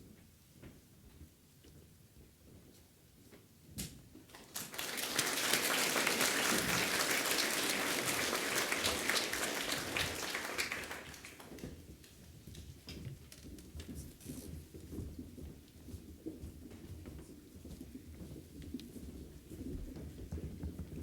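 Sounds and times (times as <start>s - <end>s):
audience applause: 4.3s - 11.7s.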